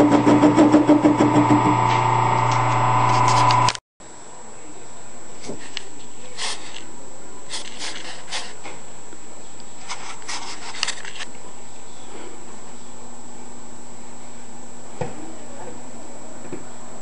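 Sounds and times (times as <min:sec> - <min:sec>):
lathe running: 0:00.0 - 0:03.8
cutting tool scraping metal: 0:01.9 - 0:03.7.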